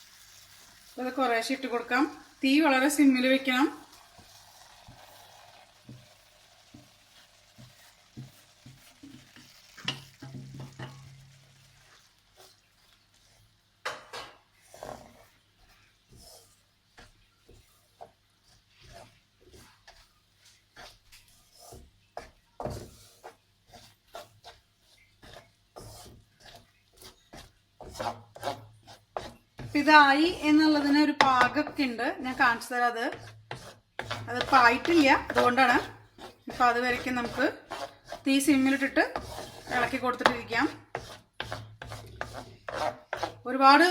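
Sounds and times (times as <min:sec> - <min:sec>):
spatula scraping a pan: 0:00.0 - 0:43.9.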